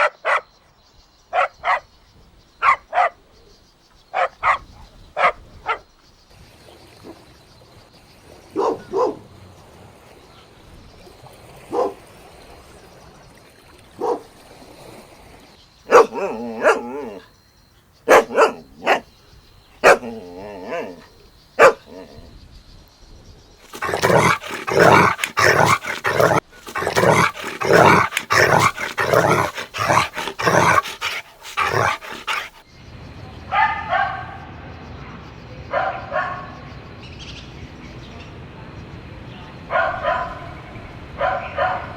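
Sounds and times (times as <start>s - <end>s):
dogs barking: 0.0s - 0.5s, 1.4s - 1.9s, 2.6s - 3.2s, 4.2s - 5.8s, 8.5s - 9.3s, 11.7s - 12.0s, 14.0s - 14.3s, 15.9s - 17.2s, 18.1s - 19.1s, 19.8s - 22.1s, 23.7s - 32.6s, 33.5s - 34.5s, 35.7s - 36.8s, 39.7s - 40.6s, 41.2s - 41.9s
dog whining: 23.7s - 32.6s.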